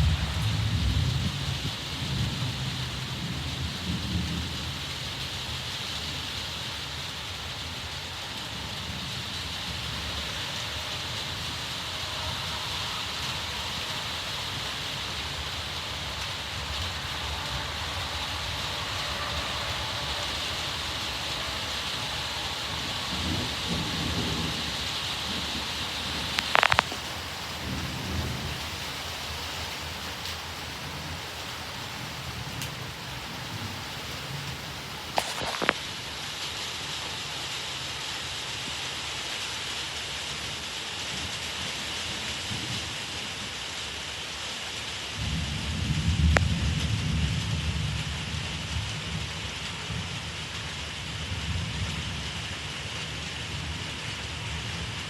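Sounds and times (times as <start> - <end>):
thunder rumbling: 0.0 - 5.7, 7.5 - 35.5, 45.2 - 52.8
heavy rain hissing: 0.0 - 55.0.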